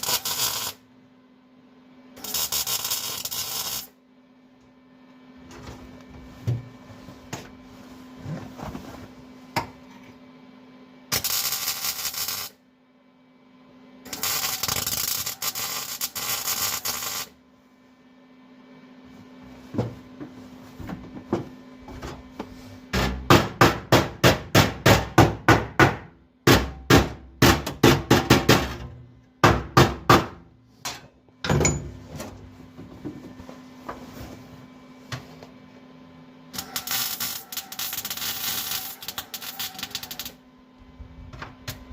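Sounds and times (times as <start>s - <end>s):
welding bursts: 0.0s - 0.8s, 2.2s - 3.9s, 11.1s - 12.6s, 14.1s - 17.3s, 36.6s - 40.4s.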